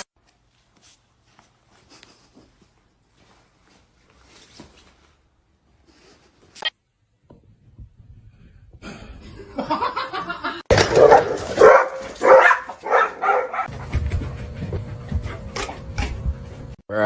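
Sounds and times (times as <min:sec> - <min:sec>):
dog barking: 0:10.7 - 0:13.7.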